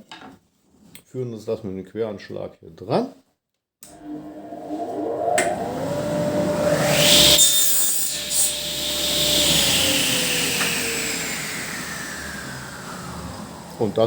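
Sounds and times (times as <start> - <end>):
saw blade winding down: 3.9 - 14.0
table saw cutting wood: 3.9 - 14.0.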